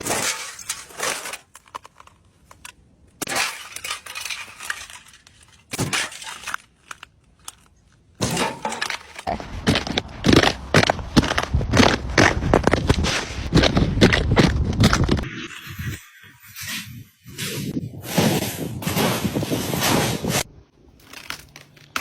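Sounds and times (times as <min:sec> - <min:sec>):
ice cracking underfoot: 0:03.2 - 0:15.3, 0:20.9 - 0:22.0.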